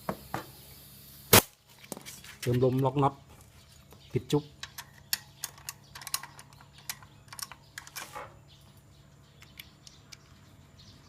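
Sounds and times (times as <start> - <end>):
hand tools clicking and tapping: 3.8 - 8.2.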